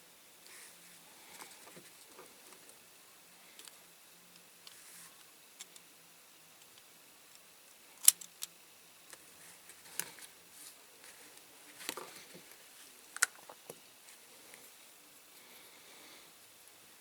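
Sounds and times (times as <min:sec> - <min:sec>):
toy car parts clicking: 0:08.0 - 0:08.5.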